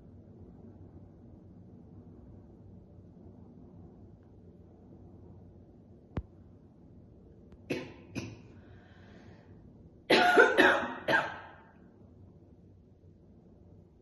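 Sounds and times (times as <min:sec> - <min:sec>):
woman coughing: 0:07.7 - 0:08.4, 0:10.1 - 0:11.6.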